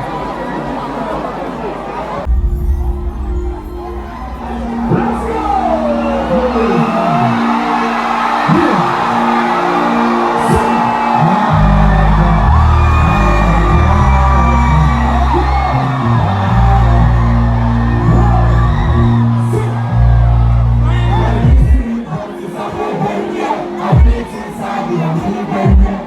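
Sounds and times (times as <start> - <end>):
heavy bass line: 2.3 - 21.9, 23.9 - 24.3
crowd whooping: 2.3 - 26.0
live concert music: 2.3 - 26.0
crowd singing along: 3.4 - 26.0.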